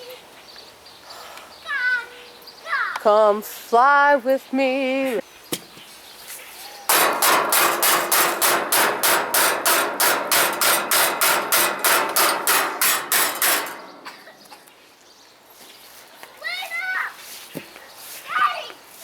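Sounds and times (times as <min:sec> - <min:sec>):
rapid hammer blows on metal: 0:06.9 - 0:14.2.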